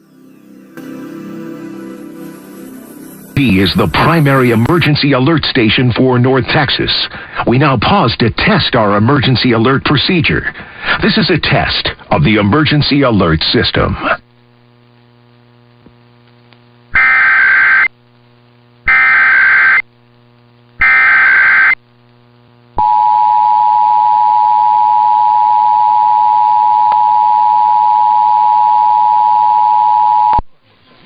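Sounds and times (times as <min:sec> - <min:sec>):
digital header data bursts: 0:02.9 - 0:06.2, 0:17.0 - 0:17.9, 0:18.9 - 0:19.8, 0:20.8 - 0:21.8.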